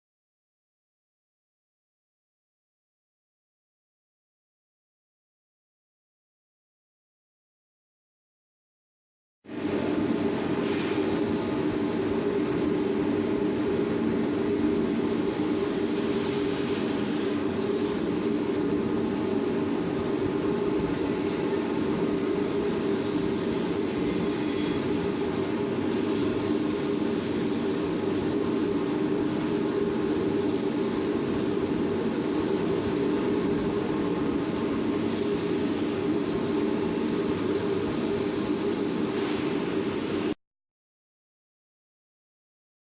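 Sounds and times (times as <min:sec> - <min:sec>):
industrial vacuum running: 0:09.5 - 0:40.3
hiss of suction: 0:15.2 - 0:18.3, 0:25.8 - 0:27.8, 0:34.9 - 0:36.2, 0:38.1 - 0:40.3.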